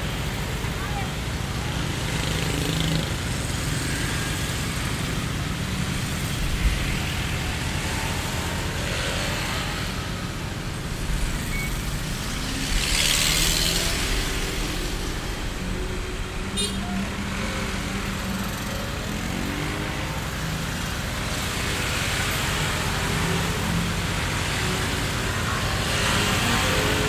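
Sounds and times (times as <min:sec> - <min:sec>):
low rumble of road traffic: 0:00.0 - 0:27.0
vehicle passing close: 0:06.0 - 0:20.4.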